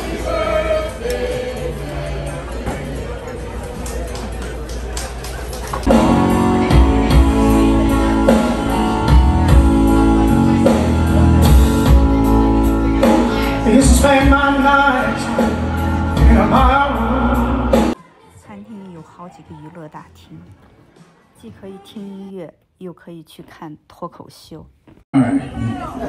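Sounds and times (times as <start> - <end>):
music with singing and bass beat: 5.9 - 18.0.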